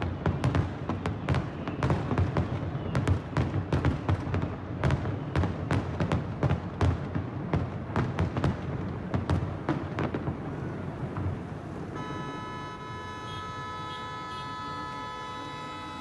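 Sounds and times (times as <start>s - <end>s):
fireworks bangs and pops: 0.0s - 12.2s.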